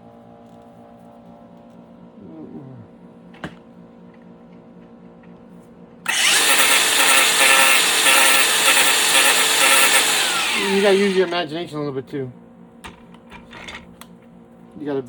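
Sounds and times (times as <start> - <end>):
angle grinder humming: 6.1 - 11.4
loud grinding noise: 6.1 - 11.4.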